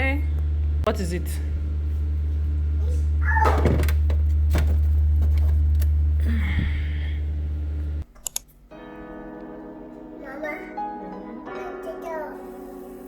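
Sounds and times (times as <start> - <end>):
low hum: 0.0 - 8.0.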